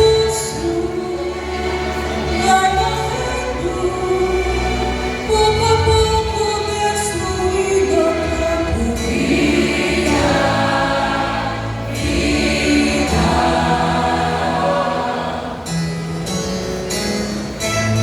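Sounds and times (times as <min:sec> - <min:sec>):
sustained musical accompaniment: 0:00.0 - 0:18.0
vocal group singing in harmony: 0:08.1 - 0:16.2.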